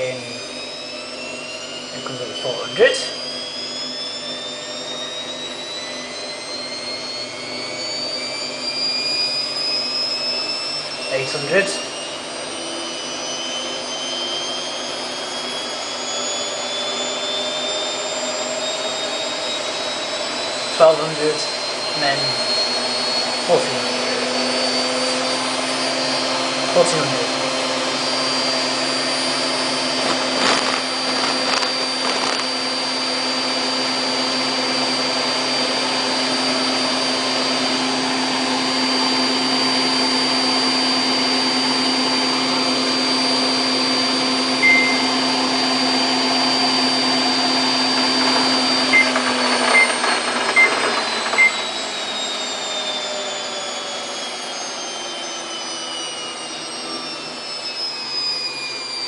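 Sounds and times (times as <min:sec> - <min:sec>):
control panel beeps: 0:44.6 - 0:45.2, 0:48.9 - 0:50.0, 0:50.6 - 0:51.6
washing machine drum spinning: 0:47.6 - 0:52.0.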